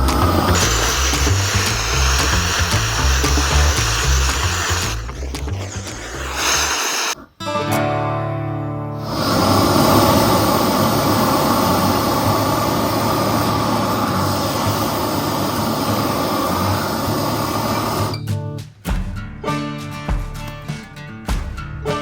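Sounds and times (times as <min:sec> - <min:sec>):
woodworking tool rushing hum: 0:00.0 - 0:07.3, 0:09.2 - 0:18.1
guitar music: 0:07.2 - 0:16.0, 0:16.7 - 0:22.0.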